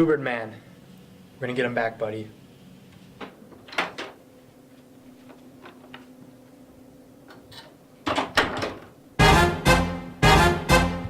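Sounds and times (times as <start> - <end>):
faint steady hum: 0.0 - 11.0
music with heavy beat: 9.2 - 11.0.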